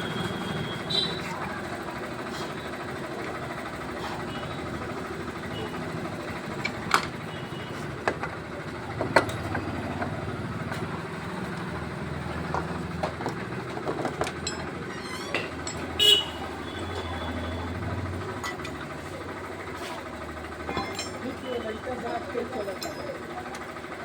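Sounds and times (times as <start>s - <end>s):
vehicle engines running: 0.0s - 24.0s
knocks and clatter: 12.3s - 16.0s, 20.6s - 21.4s.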